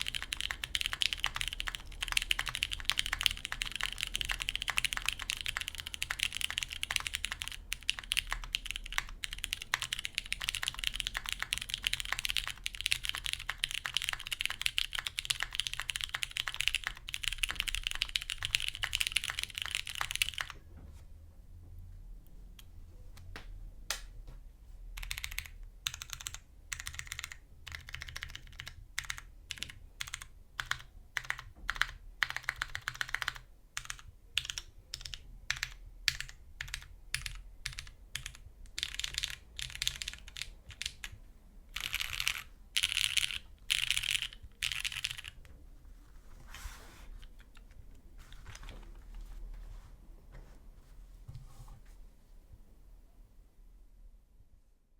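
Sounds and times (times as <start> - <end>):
mechanical keyboard typing: 0.0 - 20.6, 25.0 - 45.5.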